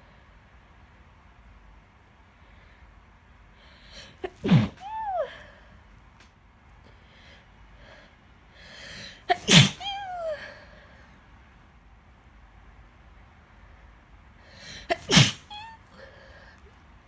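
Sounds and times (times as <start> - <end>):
woman sneezing: 4.1 - 5.4, 9.2 - 10.5, 14.8 - 15.9.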